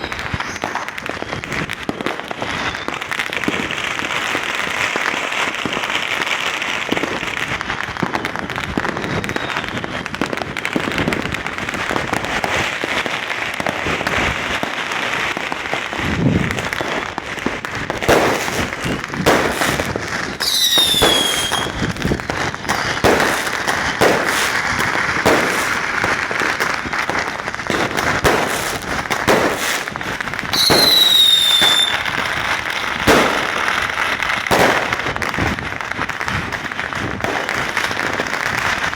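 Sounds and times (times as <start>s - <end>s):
firework falling whistle: 0.0s - 1.4s, 8.9s - 10.0s, 18.1s - 25.9s, 30.5s - 32.4s
firecrackers crackling: 0.0s - 38.9s
fireworks bangs: 0.0s - 38.9s.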